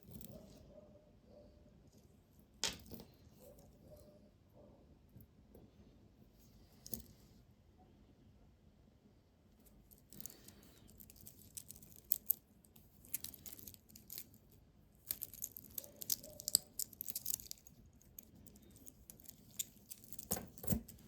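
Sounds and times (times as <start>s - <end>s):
rustling: 9.9s - 21.0s.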